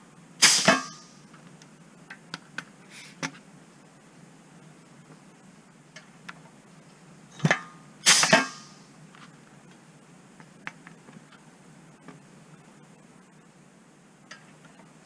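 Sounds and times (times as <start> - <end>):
brief hiss: 0.4 - 1.2, 8.0 - 8.8.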